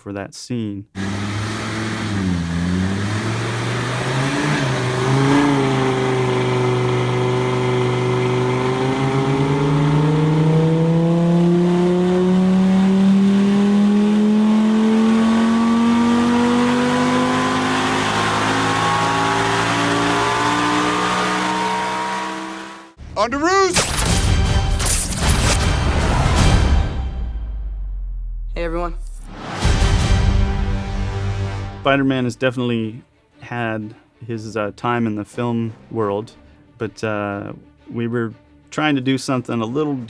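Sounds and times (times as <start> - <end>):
car engine accelerating hard: 1.0 - 23.0.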